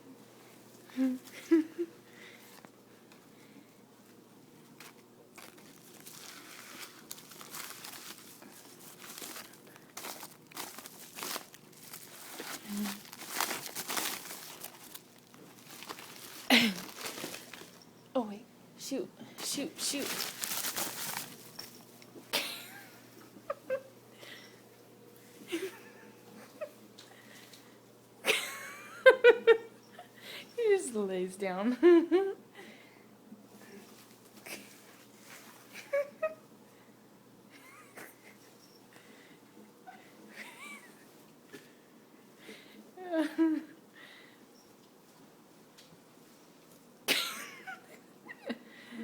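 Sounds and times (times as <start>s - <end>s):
soft rustles: 2.2s - 18.2s, 19.3s - 22.3s, 33.5s - 36.0s
bubble wrap crinkling: 4.7s - 18.0s, 19.4s - 22.1s.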